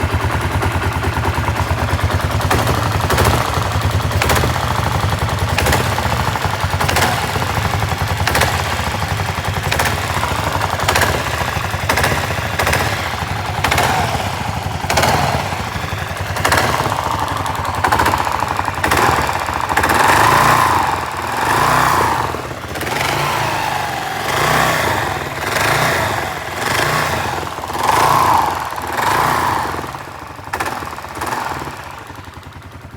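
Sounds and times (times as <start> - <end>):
sharp engine knock: 0.0 - 23.7
engine throttle blips: 0.0 - 32.8
motorcycle engine running: 0.0 - 32.9.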